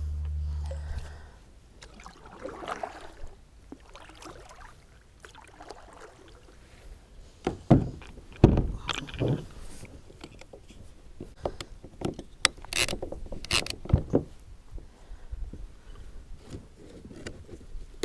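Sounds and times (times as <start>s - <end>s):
loud hollow thumps against kayak: 7.5s - 8.8s.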